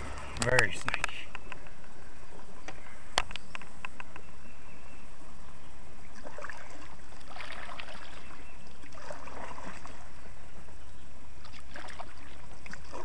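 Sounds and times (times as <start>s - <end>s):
paddle splashing in water: 6.1s - 10.6s, 11.4s - 13.0s.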